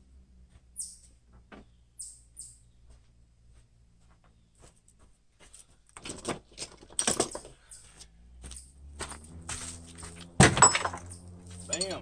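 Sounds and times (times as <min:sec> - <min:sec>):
metal tools clinking and rattling: 0:06.0 - 0:07.6, 0:10.5 - 0:12.0.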